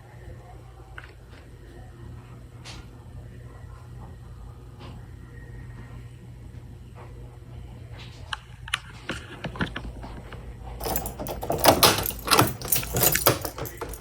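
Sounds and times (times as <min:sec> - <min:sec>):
hardware clicking and rattling: 0:10.8 - 0:14.0.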